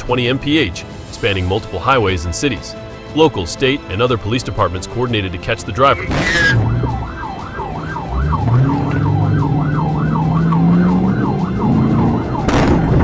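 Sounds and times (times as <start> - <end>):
police siren yelping: 5.8 - 13.0
car engine accelerating: 6.0 - 13.0.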